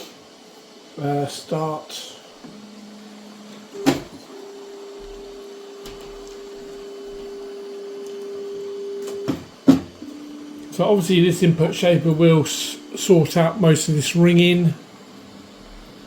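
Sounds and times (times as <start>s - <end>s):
stepper motor hum: 2.4s - 16.0s
stepper motor whine: 2.4s - 16.0s
printer knocks: 3.8s - 4.2s, 9.2s - 10.1s.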